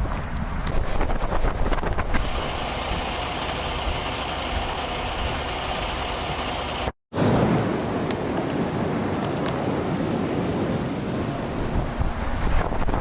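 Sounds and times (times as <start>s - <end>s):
road noise: 0.0s - 6.9s, 7.6s - 13.0s
vehicle engine: 1.6s - 6.9s.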